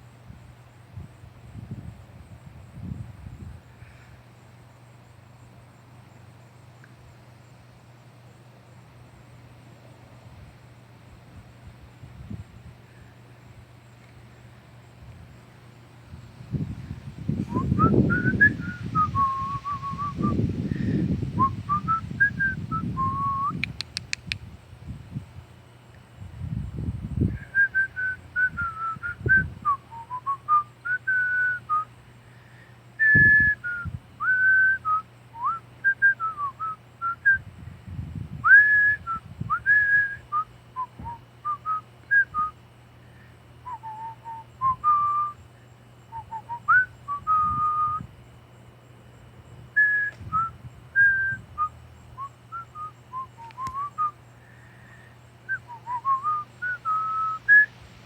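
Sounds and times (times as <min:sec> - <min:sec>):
steady low hum: 0:00.0 - 0:58.0
person whistling a tune: 0:17.5 - 0:20.4, 0:21.4 - 0:24.3, 0:38.4 - 0:42.5, 0:46.2 - 0:48.0, 0:49.8 - 0:51.7, 0:52.5 - 0:54.1, 0:55.5 - 0:57.7.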